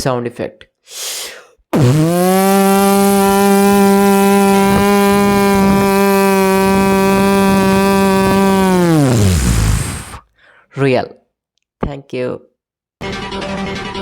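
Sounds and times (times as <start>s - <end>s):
beatboxer imitating a motor hum: 1.8s - 10.2s.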